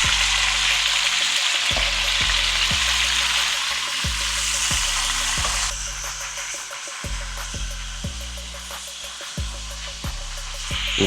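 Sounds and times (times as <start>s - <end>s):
vegetables sizzling in hot oil: 0.0s - 5.7s.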